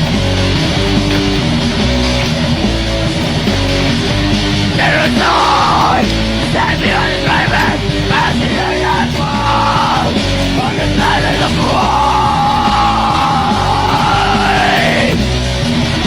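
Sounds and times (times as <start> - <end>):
heavy rock music: 0.0 - 16.0
person yelling vocals: 4.8 - 15.2.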